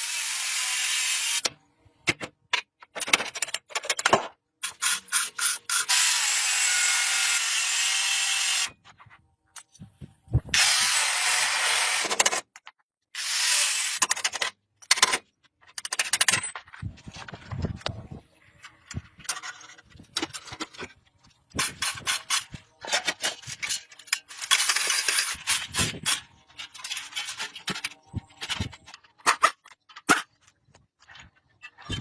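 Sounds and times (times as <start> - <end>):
tool scraping: 19.0 - 30.4.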